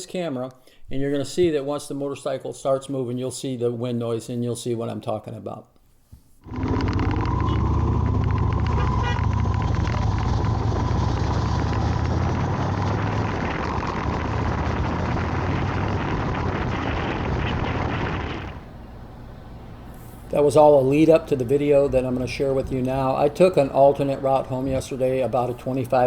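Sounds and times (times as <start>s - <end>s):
wind buffeting microphone: 6.5s - 19.5s.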